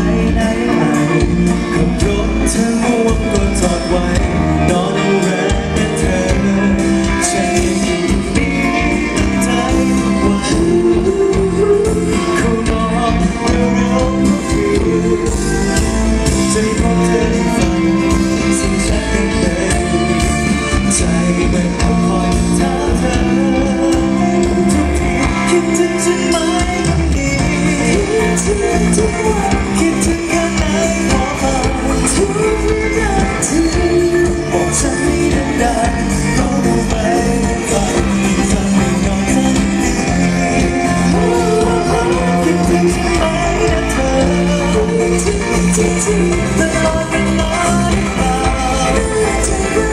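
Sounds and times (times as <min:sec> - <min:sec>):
amplified pop music: 0:00.0 - 0:49.9
person singing with band: 0:00.0 - 0:49.9.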